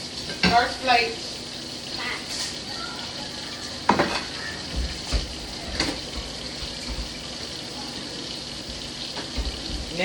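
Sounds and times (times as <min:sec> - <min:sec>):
dishes knocking: 0:03.9 - 0:07.1
tap running into sink: 0:03.9 - 0:07.2, 0:08.6 - 0:10.0.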